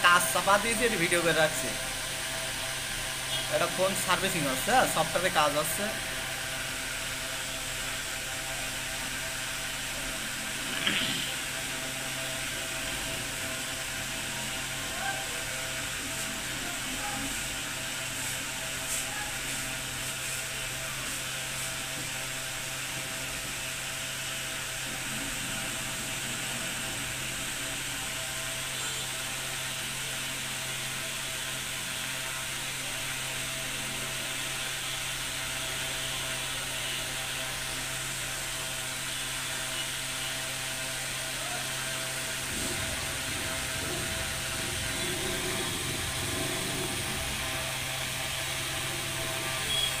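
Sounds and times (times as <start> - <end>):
mechanical hum: 0.0 - 50.0.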